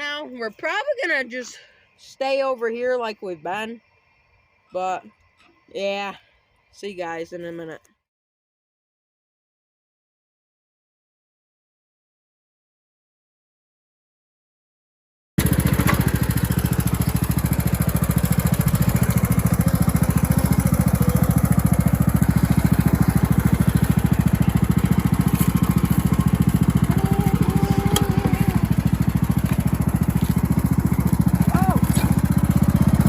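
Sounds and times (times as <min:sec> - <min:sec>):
riding lawn mower engine: 0:15.4 - 0:33.0.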